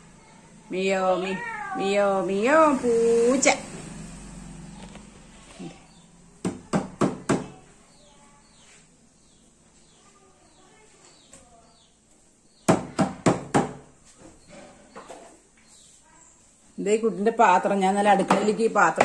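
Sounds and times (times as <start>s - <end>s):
faint bird chirps: 7.8s - 12.7s.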